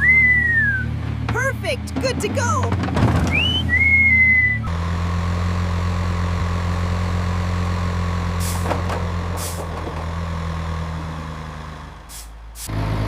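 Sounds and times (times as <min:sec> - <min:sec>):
heavy vehicle engine humming: 0:00.0 - 0:13.0
short air hisses: 0:08.4 - 0:08.7, 0:12.1 - 0:12.7.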